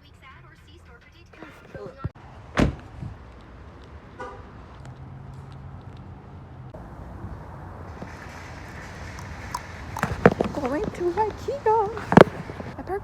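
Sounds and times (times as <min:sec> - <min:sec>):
low car hum: 0:00.0 - 0:13.0
loud thump: 0:02.0 - 0:03.2
car horn toot: 0:04.2 - 0:04.5.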